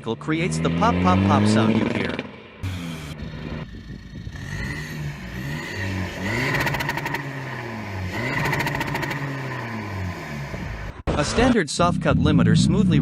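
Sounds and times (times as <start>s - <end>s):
car engine revving: 0.0s - 11.1s
rapid popping at rev limiter: 1.6s - 9.8s.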